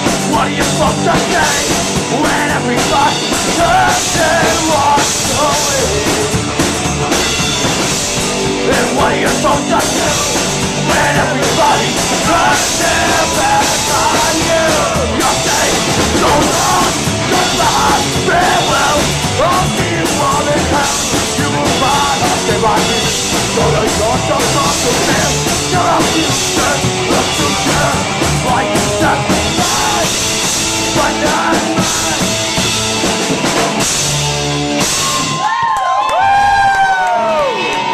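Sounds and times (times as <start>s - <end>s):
drum kit: 0.0s - 37.9s
rock band playing: 0.0s - 37.9s.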